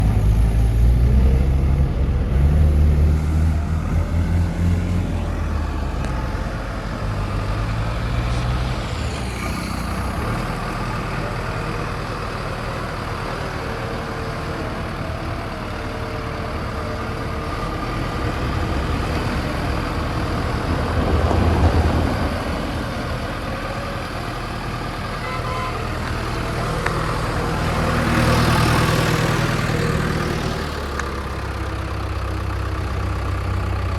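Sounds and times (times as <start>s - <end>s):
heavy diesel engine running: 0.0s - 33.9s.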